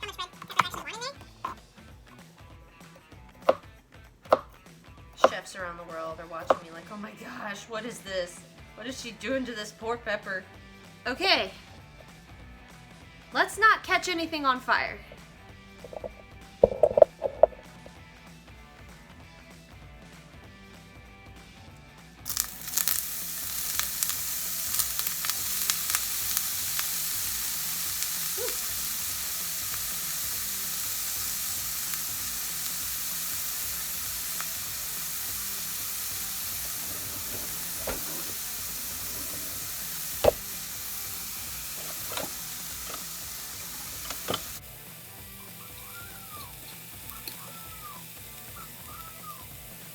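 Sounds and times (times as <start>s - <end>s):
crackles and pops: 15.8s - 17.6s, 22.3s - 49.9s
food sizzling in a skillet: 22.2s - 49.9s.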